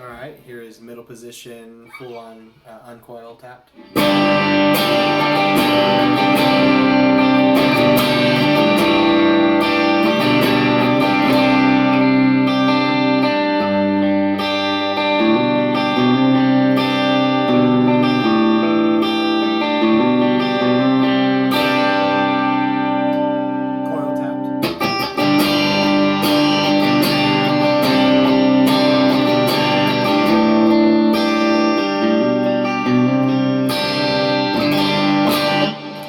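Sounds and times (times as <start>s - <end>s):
electric guitar chords: 3.7s - 36.0s.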